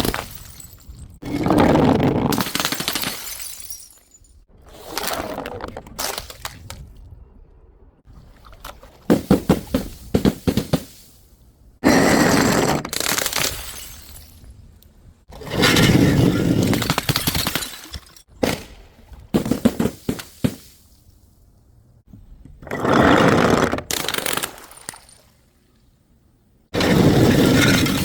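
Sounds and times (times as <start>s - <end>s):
glass bottles and jars smashing: 0.0s - 1.6s, 2.3s - 4.5s, 12.9s - 14.5s, 16.6s - 18.3s.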